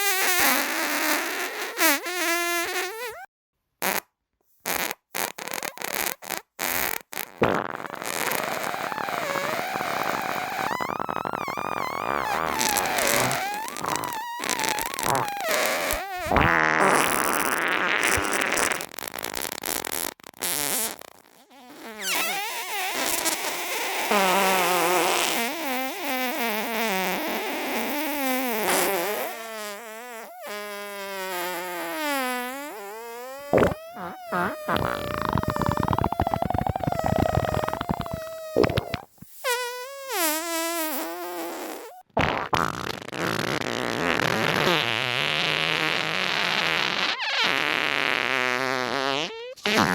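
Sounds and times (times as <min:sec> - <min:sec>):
farts: 0:00.0 - 0:49.9
short sharp pops: 0:07.2 - 0:08.4, 0:28.5 - 0:29.8, 0:33.5 - 0:39.8.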